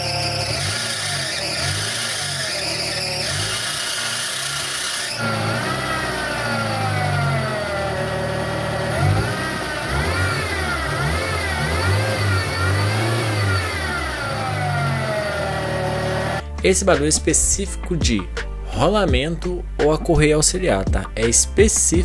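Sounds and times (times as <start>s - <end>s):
alternator belt squeal: 0.0s - 16.4s
car engine revving: 0.0s - 22.0s.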